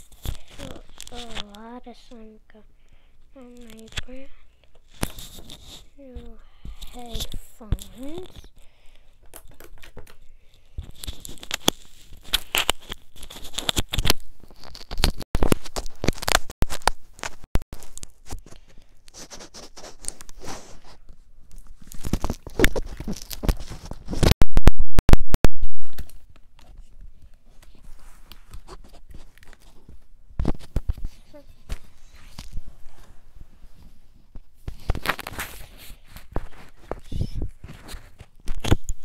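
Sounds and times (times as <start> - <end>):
handling noise with clicks: 6.7 - 24.4, 25.7 - 33.1, 33.7 - 39.0.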